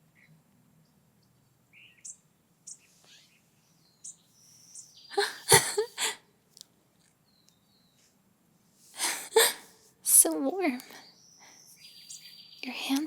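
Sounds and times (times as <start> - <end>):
faint background noise: 0.0 - 13.0
bird chirps and tweets: 0.2 - 5.2, 7.2 - 8.1, 10.6 - 13.0.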